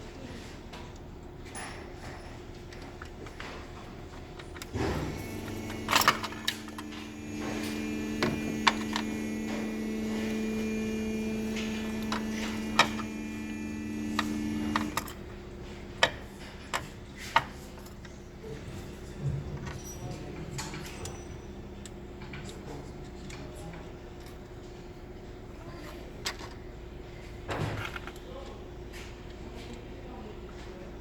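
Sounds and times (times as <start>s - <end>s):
steady mechanical hum: 0.0s - 31.0s
sharp clicks and knocks: 4.1s - 10.8s, 11.4s - 15.2s.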